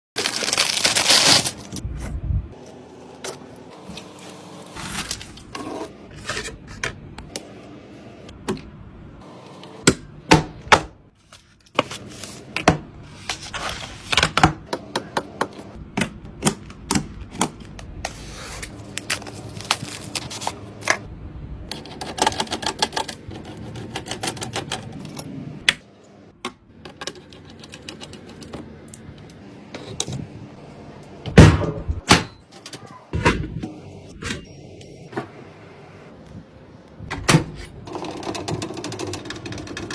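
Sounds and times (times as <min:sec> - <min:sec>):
computer parts clicking and knocking: 0:21.7 - 0:25.8, 0:37.1 - 0:39.9.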